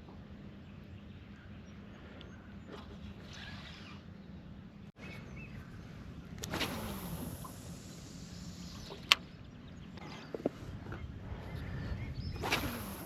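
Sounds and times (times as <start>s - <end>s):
low hum: 0.0s - 13.0s
fishing rod cast swoosh: 6.4s - 8.1s, 12.4s - 13.0s.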